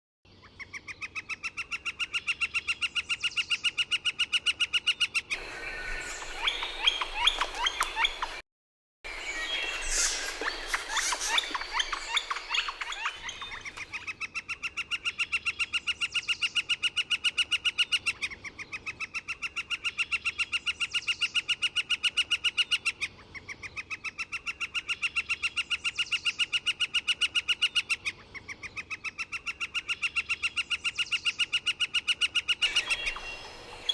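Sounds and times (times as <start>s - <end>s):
woodpecker kek calls: 5.3s - 8.4s, 9.1s - 14.0s, 32.6s - 33.9s.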